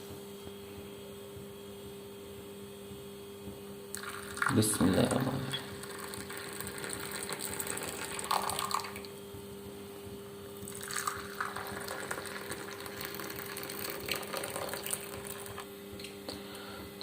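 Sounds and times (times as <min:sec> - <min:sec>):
low steady hum: 0:00.0 - 0:17.0
tea pouring into a cup: 0:03.9 - 0:09.1, 0:10.6 - 0:15.7.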